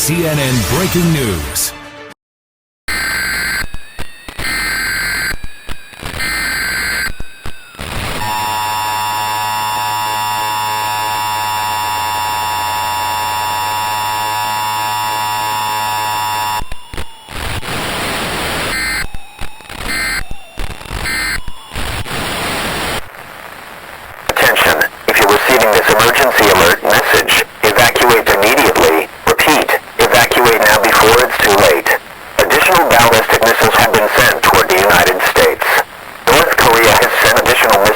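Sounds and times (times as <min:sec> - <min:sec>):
two-tone attention signal: 0:02.9 - 0:17.2, 0:18.6 - 0:21.8
digital data bursts: 0:02.9 - 0:23.1, 0:24.4 - 0:37.9
static: 0:02.9 - 0:37.9.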